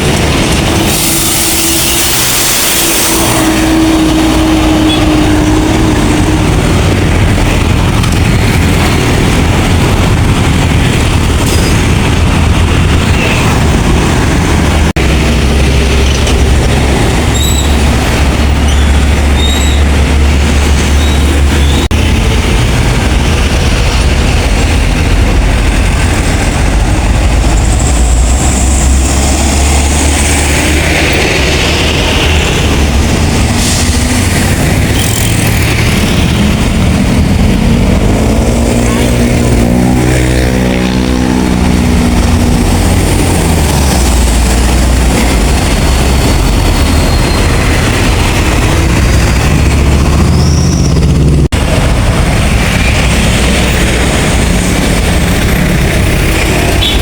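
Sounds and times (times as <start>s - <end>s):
heavy vehicles rumbling past: 0.0s - 57.0s
passing vehicle engine: 0.0s - 57.0s.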